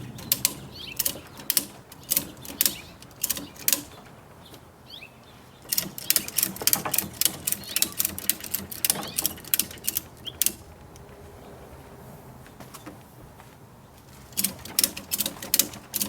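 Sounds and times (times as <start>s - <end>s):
ratchet strap clicking: 0.1s - 4.1s, 5.6s - 11.1s, 14.3s - 16.0s.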